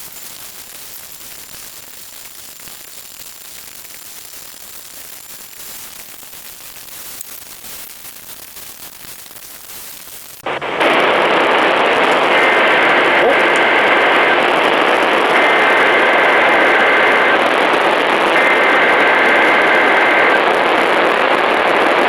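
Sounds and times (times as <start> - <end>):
radio static hissing: 0.0 - 22.0
faint high whine: 10.4 - 22.0
loud rush of noise: 10.4 - 22.0.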